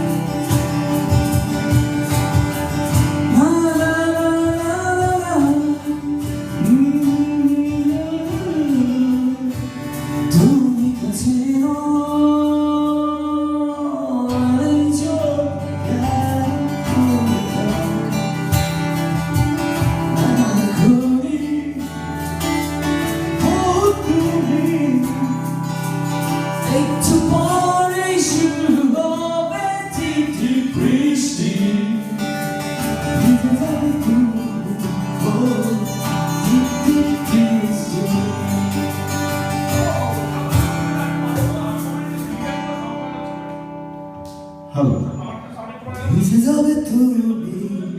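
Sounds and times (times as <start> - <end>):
guitar accompaniment: 0.0 - 47.9
person singing wordless melody: 3.2 - 18.6, 20.1 - 22.4, 23.1 - 25.9, 26.6 - 43.2.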